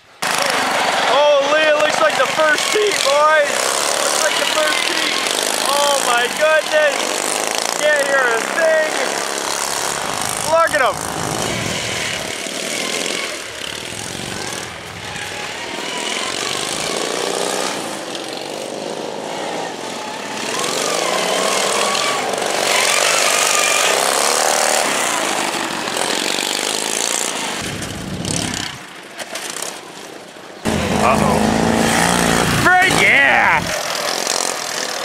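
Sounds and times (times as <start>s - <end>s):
lawn mower engines racing: 0.0s - 35.0s.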